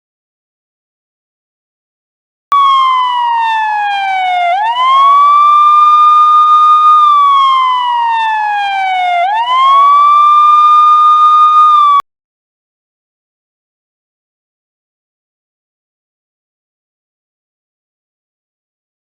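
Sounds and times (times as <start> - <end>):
police siren wailing: 2.5 - 12.0.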